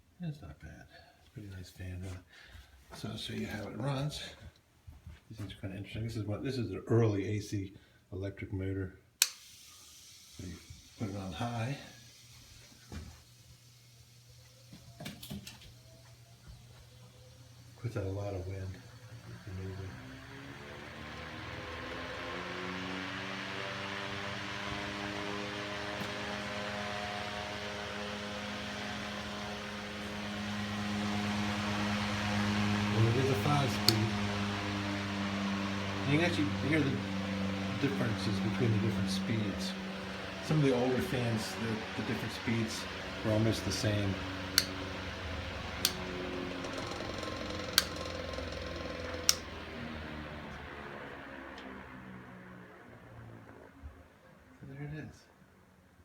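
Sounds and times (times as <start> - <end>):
desk fan motor hum: 10.4 - 53.8
rush of air from fan blades: 17.5 - 50.5.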